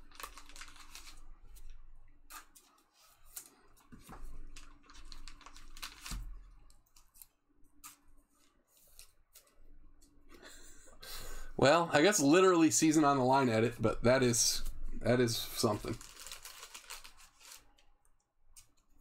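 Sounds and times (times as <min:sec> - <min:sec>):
trading cards rustling and snapping: 0:00.0 - 0:10.1, 0:15.6 - 0:17.9.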